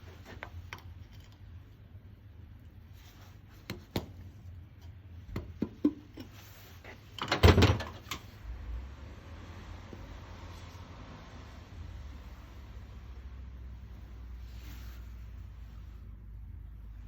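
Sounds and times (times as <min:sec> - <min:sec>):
low steady hum: 0:00.0 - 0:17.0
knocks and clatters: 0:07.1 - 0:08.3.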